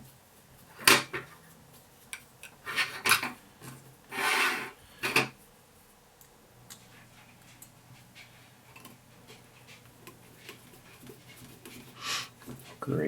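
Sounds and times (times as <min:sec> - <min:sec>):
scraping rub: 0:04.1 - 0:04.8.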